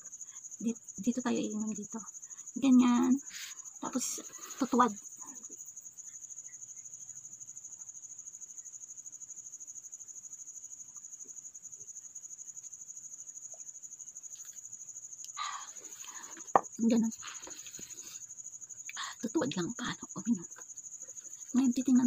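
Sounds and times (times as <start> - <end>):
crickets chirping: 0.0 - 22.0.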